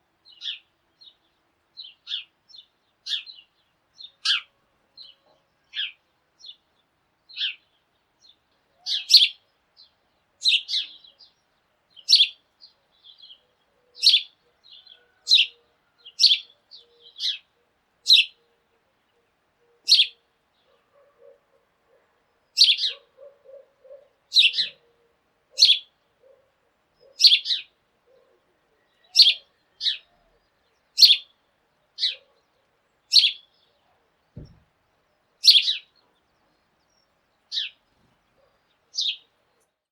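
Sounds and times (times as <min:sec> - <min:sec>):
sparrow chirping: 0:00.2 - 0:39.7.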